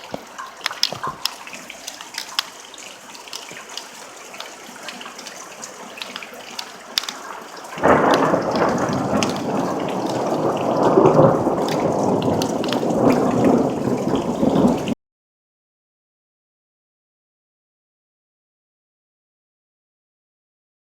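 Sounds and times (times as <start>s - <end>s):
rain falling: 0.0s - 15.0s
thunder crack and rumble: 7.8s - 15.0s.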